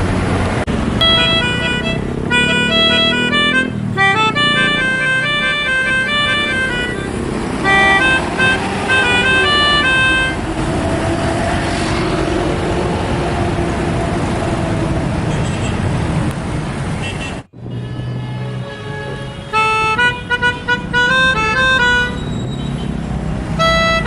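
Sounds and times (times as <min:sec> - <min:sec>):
bus engine rumble: 0:00.0 - 0:17.8, 0:18.9 - 0:24.0
bus multi-tone horn melody: 0:00.7 - 0:11.4, 0:17.0 - 0:24.0.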